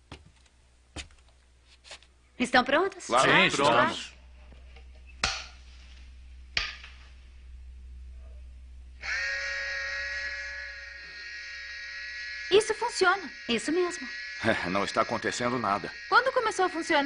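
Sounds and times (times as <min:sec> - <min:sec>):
electronic buzzing hum: 0:04.2 - 0:17.0.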